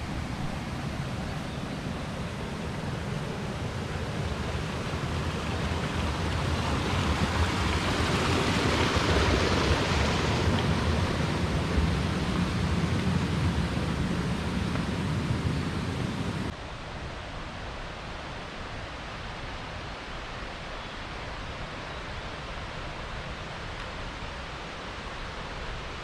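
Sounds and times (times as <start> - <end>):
river water rushing: 0.0 - 26.0.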